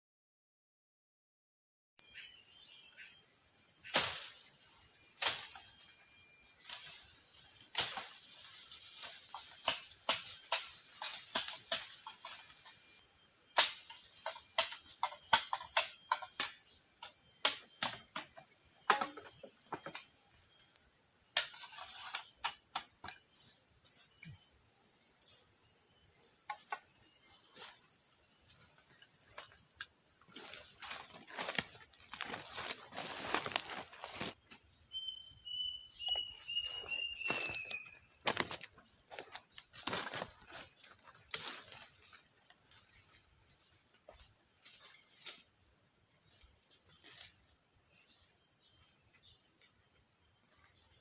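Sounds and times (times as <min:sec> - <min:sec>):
insects droning: 0:02.0 - 0:51.0.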